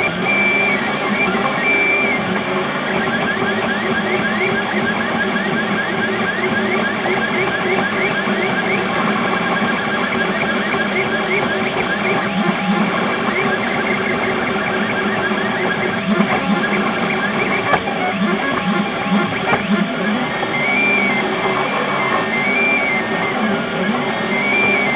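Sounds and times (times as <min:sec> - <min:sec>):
stepper motors whining chirps: 0:00.0 - 0:24.9
steady hum: 0:11.4 - 0:23.4.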